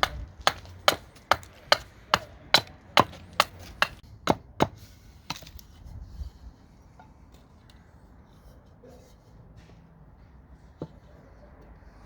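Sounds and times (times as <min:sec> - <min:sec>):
axe chopping wood: 0:00.0 - 0:05.5.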